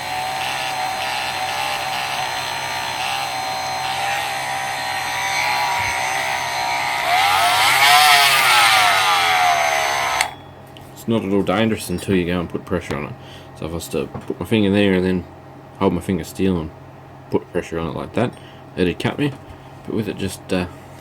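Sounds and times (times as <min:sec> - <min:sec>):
oscillating tool motor whine: 0:00.0 - 0:10.4.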